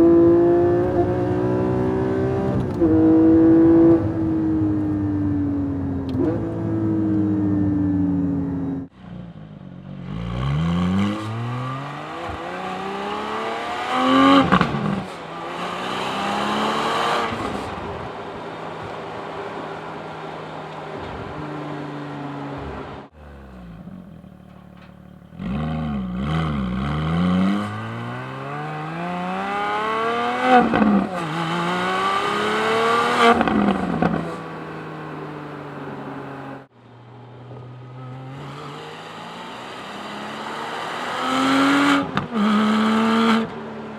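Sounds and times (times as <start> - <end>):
car engine accelerating through gears: 0.0 - 43.8.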